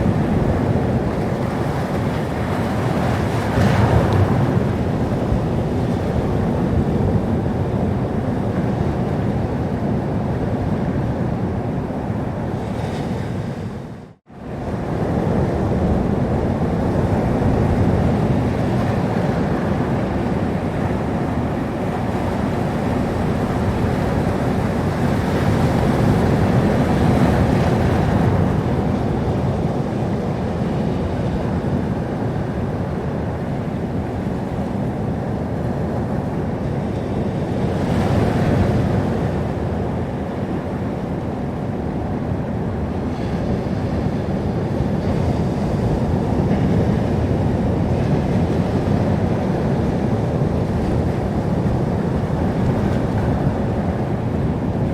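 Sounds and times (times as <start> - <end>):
waves washing in: 0.0 - 54.9.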